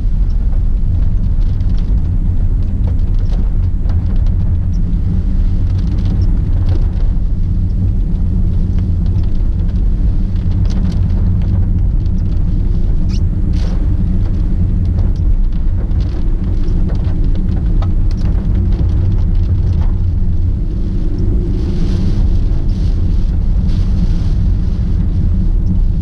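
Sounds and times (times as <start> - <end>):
road and wind rumble in car: 0.0 - 26.0
rain ticks: 0.2 - 26.0.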